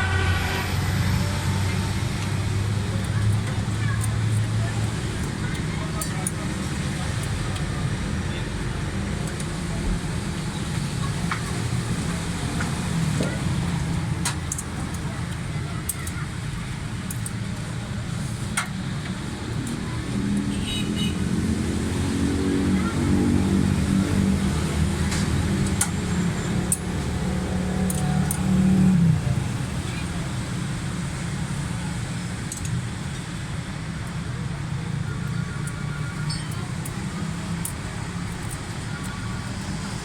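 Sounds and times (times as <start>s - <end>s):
engine rumble: 0.0s - 40.0s.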